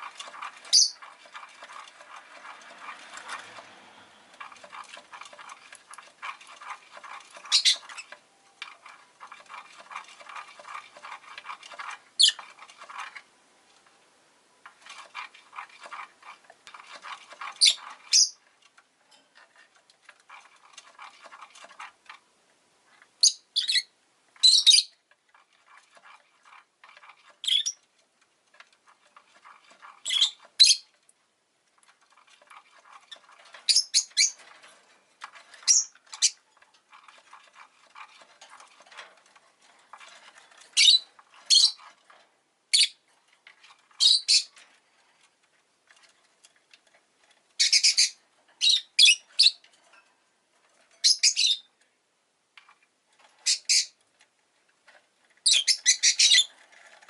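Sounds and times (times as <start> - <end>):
scratchy bird chatter: 0.0 - 13.3, 14.7 - 22.2, 22.9 - 31.1, 31.7 - 49.9, 50.6 - 51.8, 52.6 - 57.0
lovebird shrill calls: 0.7 - 1.0, 51.0 - 51.6, 55.5 - 56.5.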